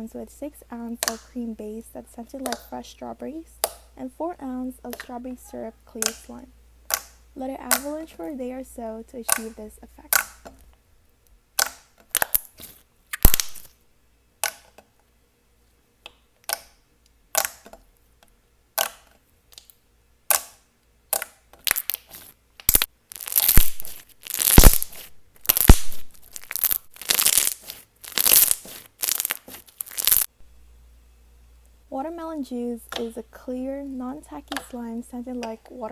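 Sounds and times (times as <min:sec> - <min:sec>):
slime sticky clicks and pops: 0:01.0 - 0:01.3, 0:06.9 - 0:07.9, 0:11.6 - 0:13.7, 0:14.4 - 0:14.7, 0:16.4 - 0:17.8, 0:18.8 - 0:30.3
slime crackling and tearing: 0:11.6 - 0:13.7, 0:21.1 - 0:30.3.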